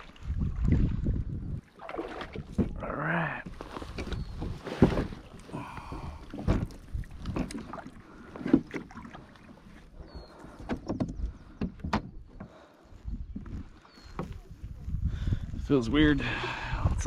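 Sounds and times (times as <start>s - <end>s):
paddle strokes in water: 0.0s - 2.8s, 3.4s - 12.7s
paddle knocking against boat: 10.6s - 12.6s.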